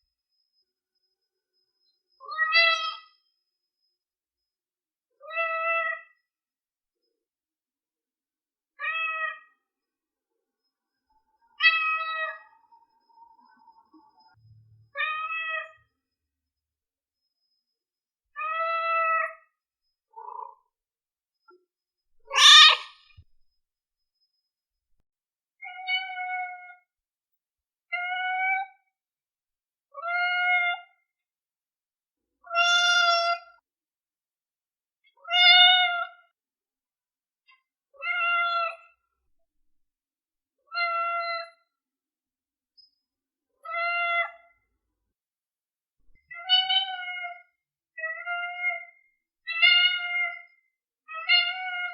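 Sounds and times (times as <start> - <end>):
kitten mewing: 22.2 - 22.9
kitten meowing: 22.2 - 23.0, 32.5 - 33.4.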